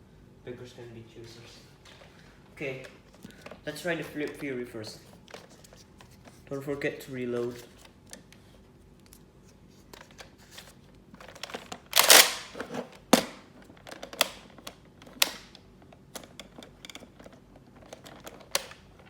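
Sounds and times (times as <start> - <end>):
toy blaster plastic clicks: 11.9 - 12.5.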